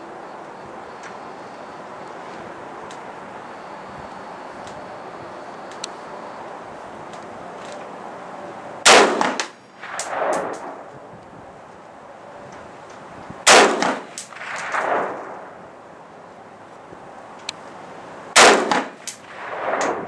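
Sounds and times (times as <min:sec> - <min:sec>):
gunshots: 0:08.9 - 0:10.8, 0:13.5 - 0:15.4, 0:18.4 - 0:20.0
rolling gunshot echo: 0:08.9 - 0:10.8, 0:13.5 - 0:15.4, 0:18.4 - 0:20.0.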